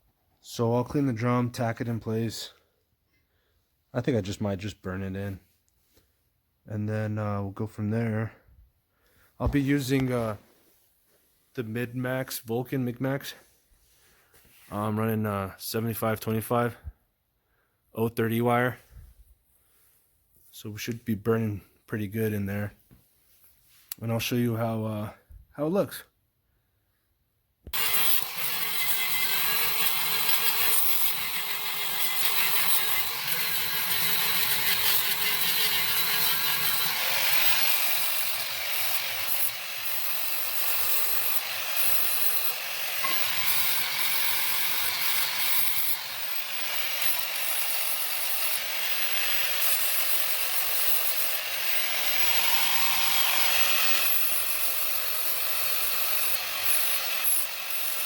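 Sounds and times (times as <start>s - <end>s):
angle grinder grinding metal: 27.7s - 58.0s.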